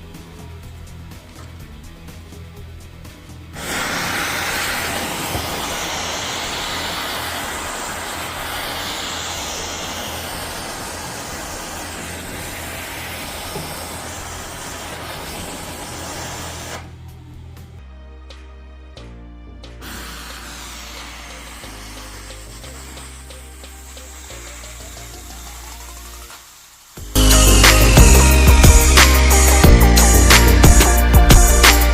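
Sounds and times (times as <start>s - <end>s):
background music: 0.0s - 26.4s, 27.0s - 31.9s
gas hissing from nozzle: 3.5s - 17.0s, 19.8s - 31.9s.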